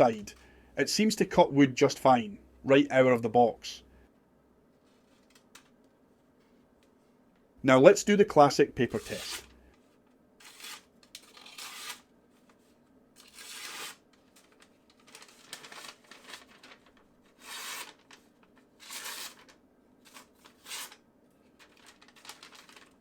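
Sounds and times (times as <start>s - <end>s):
knife slicing paper: 8.9s - 9.5s, 10.4s - 12.1s, 13.2s - 14.0s, 15.1s - 18.2s, 18.8s - 21.0s.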